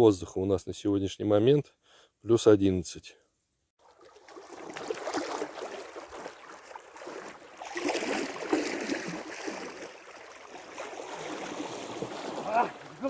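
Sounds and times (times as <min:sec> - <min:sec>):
water splashing as person wades: 0:03.8 - 0:13.0.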